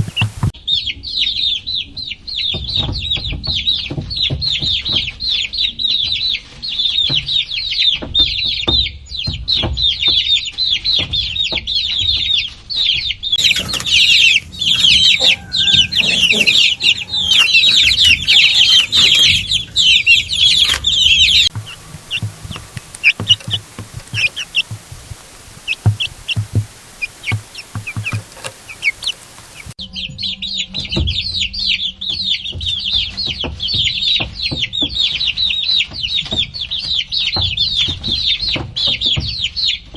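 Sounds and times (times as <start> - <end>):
baby chicks peeping: 0.0 - 0.5, 13.4 - 29.8.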